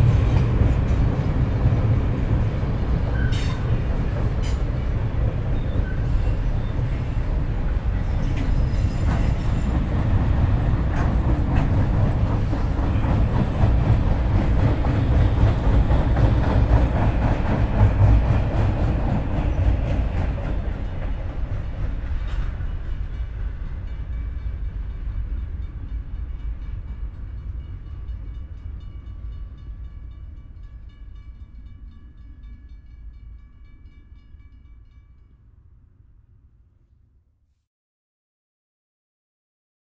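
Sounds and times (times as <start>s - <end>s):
freight train rumbling past: 0.0s - 35.8s.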